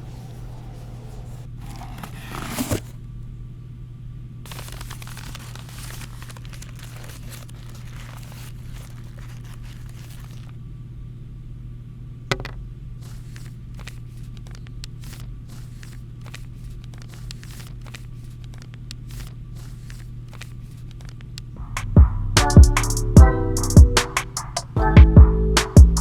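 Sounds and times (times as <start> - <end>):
clicks and taps handling packaging: 12.3 - 12.6.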